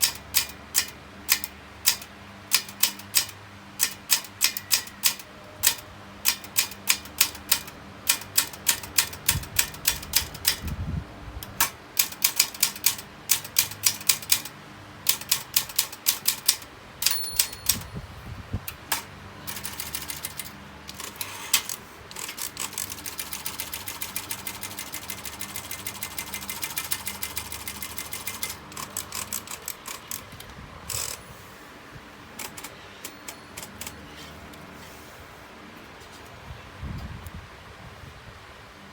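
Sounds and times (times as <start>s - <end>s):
typewriter keys clacking: 0.0s - 10.7s, 11.5s - 17.9s, 18.8s - 30.3s, 32.4s - 34.0s
typewriter bell ringing: 15.8s - 18.0s, 32.4s - 34.1s.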